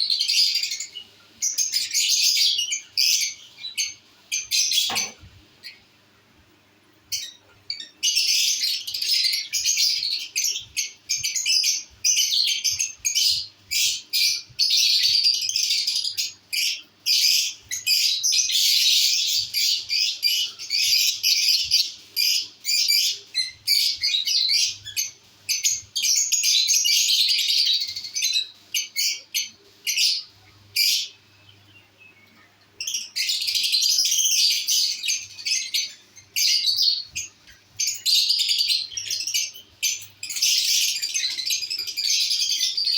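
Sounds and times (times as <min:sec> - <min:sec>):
lovebirds chirping: 0:00.0 - 0:06.0, 0:07.1 - 0:42.9.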